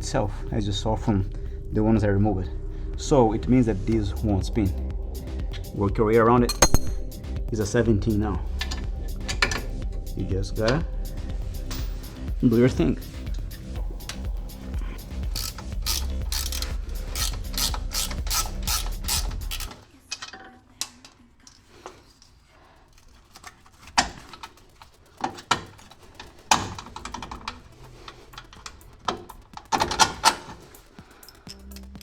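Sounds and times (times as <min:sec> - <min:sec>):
metal clicks and clinks: 0:06.5 - 0:07.2, 0:15.2 - 0:21.7
ratchet wrench clicking: 0:06.5 - 0:07.2, 0:13.3 - 0:20.3, 0:22.9 - 0:32.0.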